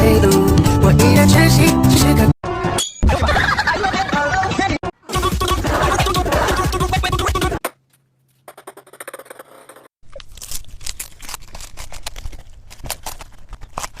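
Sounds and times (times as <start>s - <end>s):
background music: 0.0s - 2.9s
small clicks and scrapes: 8.3s - 14.0s.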